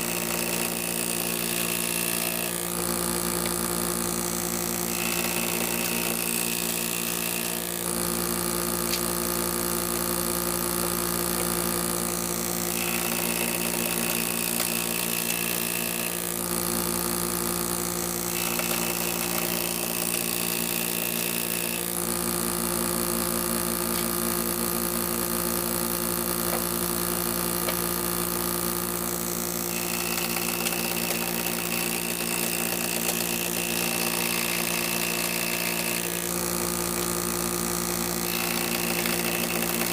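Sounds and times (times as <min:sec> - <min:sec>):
power tool motor humming: 0:00.0 - 0:39.9.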